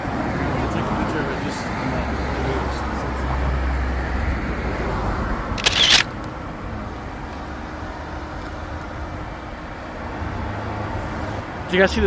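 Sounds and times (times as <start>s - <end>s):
camera shutter burst: 5.6s - 6.1s.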